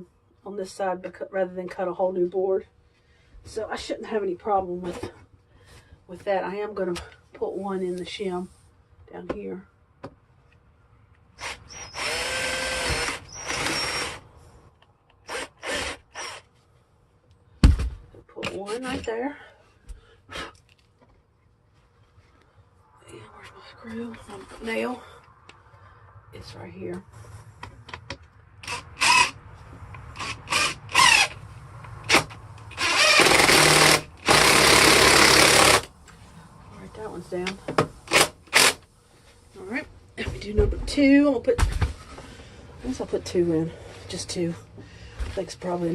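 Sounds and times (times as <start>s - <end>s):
power drill drilling into wood: 11.4s - 14.2s, 15.2s - 16.4s, 28.6s - 29.4s, 30.2s - 31.4s, 32.0s - 35.9s, 38.1s - 38.8s.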